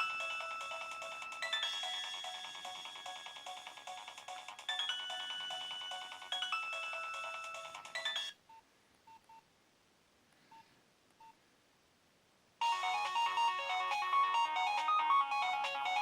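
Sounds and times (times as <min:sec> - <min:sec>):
phone ringtone melody: 0:00.0 - 0:08.4, 0:12.6 - 0:16.0.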